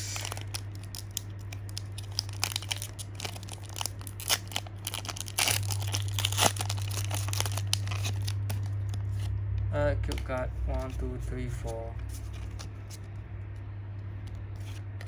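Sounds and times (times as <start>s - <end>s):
foil wrapper crinkling and tearing: 0.0s - 9.3s
steady low hum: 0.0s - 15.0s
cards rustling: 0.1s - 15.0s.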